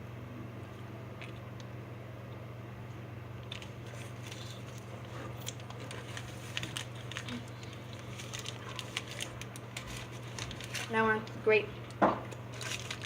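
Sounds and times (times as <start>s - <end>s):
plastic candy wrappers crinkling: 3.4s - 13.0s.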